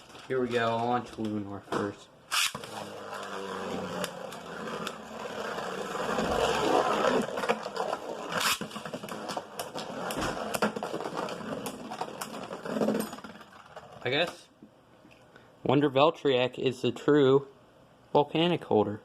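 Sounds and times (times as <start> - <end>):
spinning tops whirring and scraping: 2.3 - 14.1.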